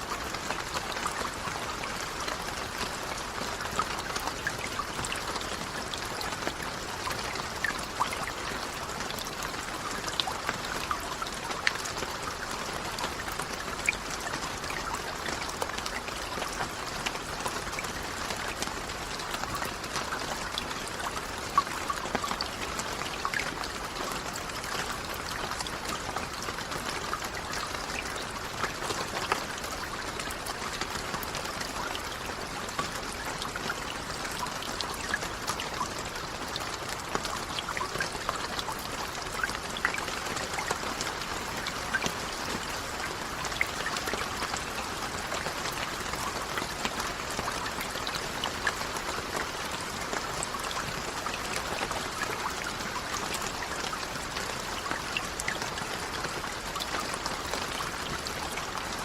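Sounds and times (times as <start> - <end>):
steady rain: 0.0 - 59.0.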